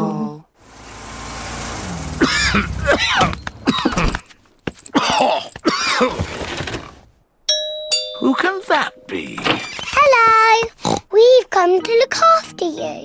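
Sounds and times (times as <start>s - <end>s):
cartoon character coughing: 2.2s - 4.1s.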